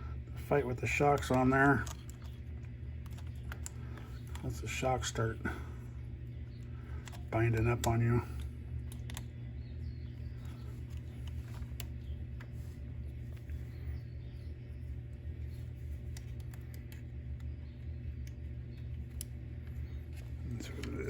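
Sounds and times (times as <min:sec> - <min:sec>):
steady low hum: 0:00.0 - 0:21.0
clicks and scraping of small parts: 0:00.9 - 0:04.6, 0:06.5 - 0:09.4, 0:10.2 - 0:13.7, 0:15.5 - 0:17.5.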